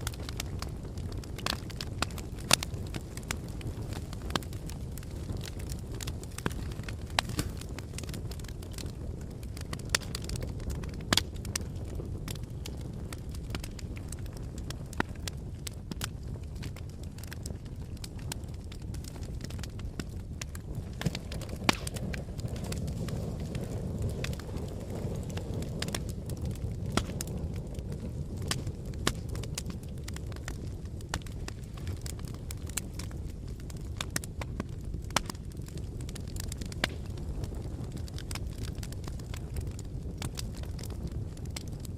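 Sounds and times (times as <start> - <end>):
fire crackling: 0.0 - 41.9
steady low rumble: 12.4 - 32.6.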